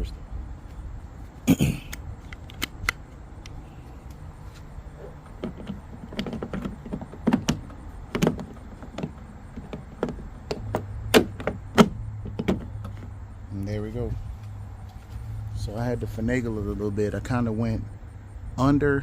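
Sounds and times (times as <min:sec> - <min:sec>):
plastic door handle clicks and scrapes: 0:05.2 - 0:13.1.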